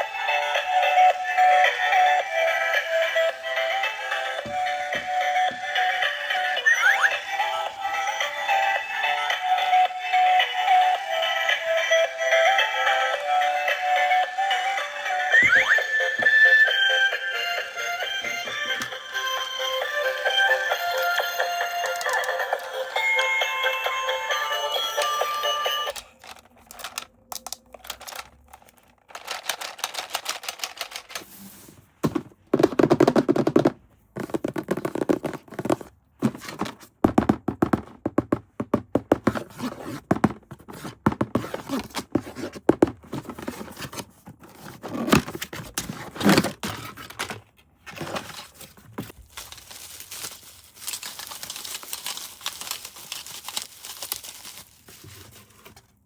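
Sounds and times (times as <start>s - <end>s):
plastic and cardboard crinkling: 20.2s - 23.0s, 25.8s - 56.0s.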